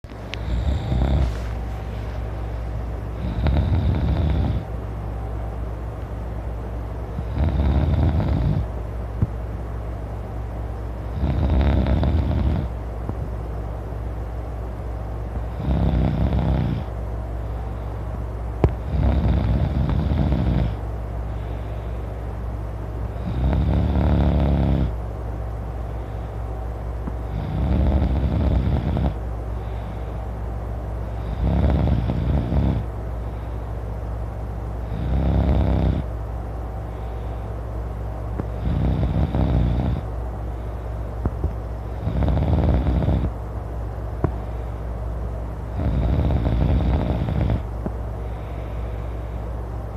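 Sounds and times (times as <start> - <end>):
man snoring loudly: 0.4 - 1.4, 3.2 - 4.7, 7.2 - 8.7, 11.1 - 12.8, 15.5 - 16.9, 18.6 - 20.8, 23.2 - 25.0, 27.3 - 29.2, 31.2 - 32.9, 34.9 - 36.1, 38.6 - 40.1, 42.0 - 43.3, 45.8 - 47.7.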